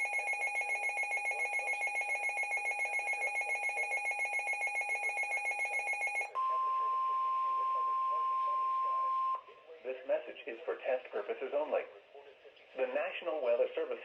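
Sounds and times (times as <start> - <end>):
pulsing multi-tone alarm: 0.0 - 6.4.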